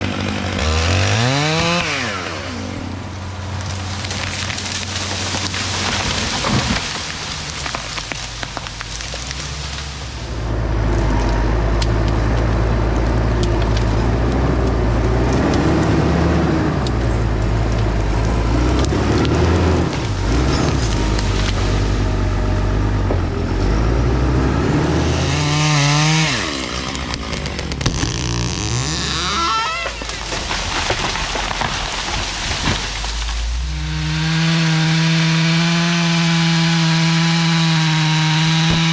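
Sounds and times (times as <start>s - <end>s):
chainsaw revving: 0.0s - 3.2s, 23.8s - 38.9s
heavy machine engine running: 0.0s - 35.6s
wood crackling and splintering: 0.0s - 38.9s.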